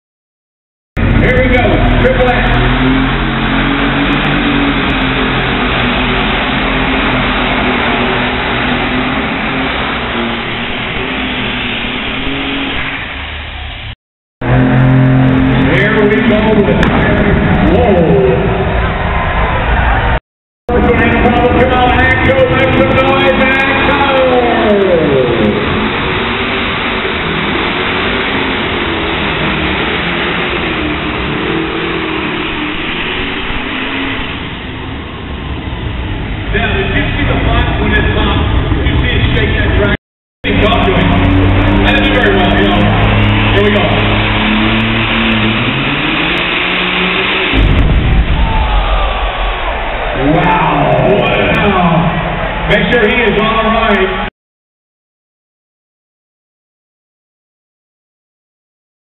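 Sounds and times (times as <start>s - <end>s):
tractor engine at full throttle: 1.0s - 19.9s, 20.7s - 48.7s.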